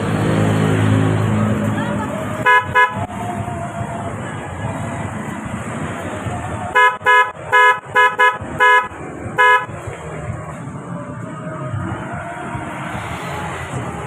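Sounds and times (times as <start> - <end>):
scooter horn honks: 2.4 - 3.0, 6.8 - 9.7.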